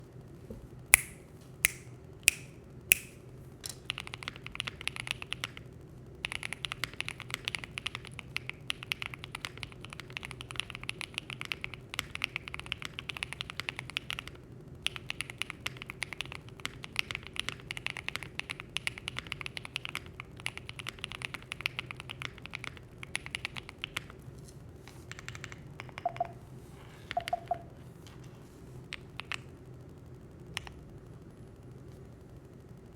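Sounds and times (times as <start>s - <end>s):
mechanical keyboard typing: 3.8s - 24.2s, 25.1s - 26.4s, 27.1s - 27.6s, 28.9s - 29.5s
tonal blips: 26.0s - 26.4s, 27.2s - 27.7s.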